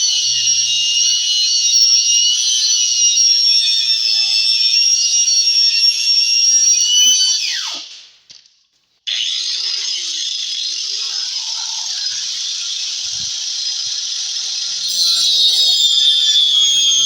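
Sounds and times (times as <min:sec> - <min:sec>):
angle grinder whining: 0:00.0 - 0:07.8, 0:10.4 - 0:17.0
grinder cutting wood: 0:10.8 - 0:17.0.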